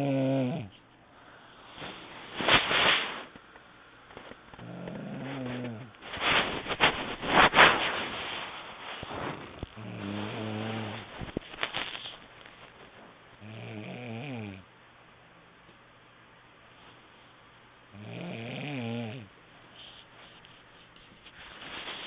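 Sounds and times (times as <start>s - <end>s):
person snoring: 0.0s - 0.8s, 4.6s - 6.0s, 9.8s - 11.1s, 13.4s - 14.7s, 17.9s - 19.3s
noisy breathing: 0.0s - 14.7s, 17.9s - 22.0s.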